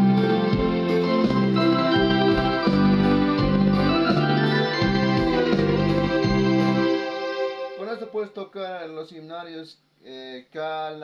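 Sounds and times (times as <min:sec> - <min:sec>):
low bass beat: 0:00.0 - 0:06.9
keyboard playing sustained chords: 0:00.0 - 0:08.2.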